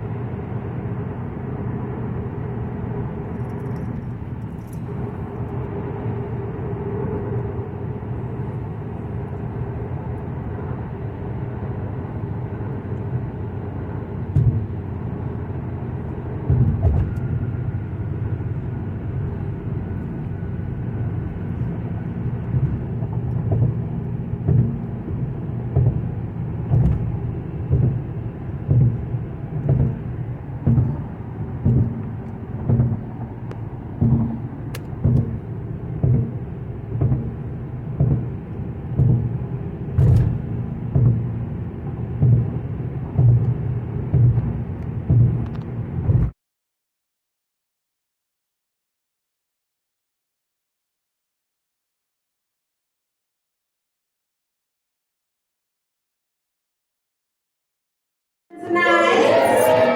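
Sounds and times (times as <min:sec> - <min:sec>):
muffled hall rumble: 0:04.0 - 0:46.2, 0:58.5 - 0:59.9.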